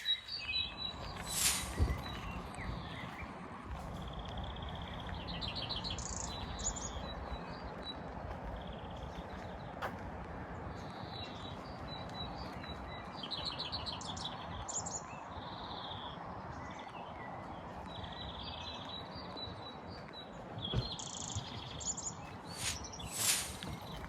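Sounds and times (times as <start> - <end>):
forest birds singing: 0.0 - 24.0
steady rushing noise: 0.4 - 8.8, 22.4 - 24.0.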